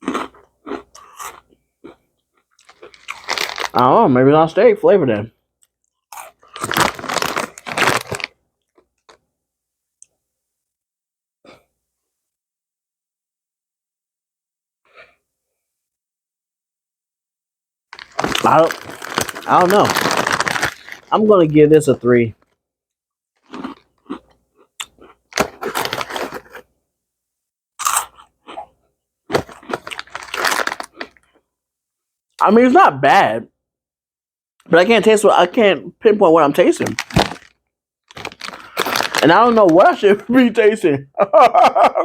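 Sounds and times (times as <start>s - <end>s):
snacks crunched and chewed: 0.0s - 3.8s, 5.6s - 9.2s, 18.0s - 21.2s, 23.4s - 26.7s, 27.8s - 28.7s, 29.3s - 31.4s, 36.8s - 40.0s.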